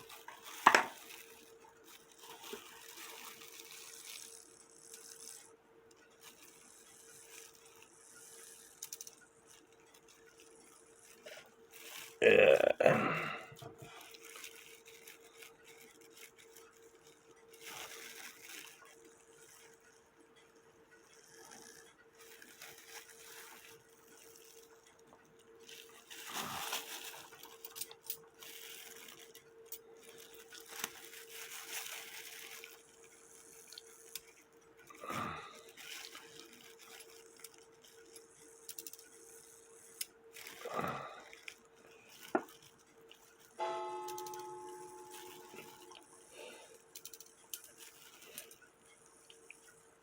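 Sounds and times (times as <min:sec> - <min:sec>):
faint steady hum: 0:00.0 - 0:50.0
metallic strike ringing: 0:43.6 - 0:45.9.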